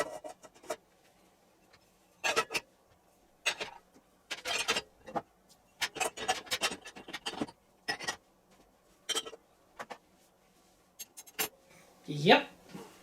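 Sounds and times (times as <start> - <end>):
dishes clinking and knocking: 0.0 - 0.8, 2.2 - 2.7, 3.4 - 8.3, 9.0 - 10.0, 11.0 - 11.6.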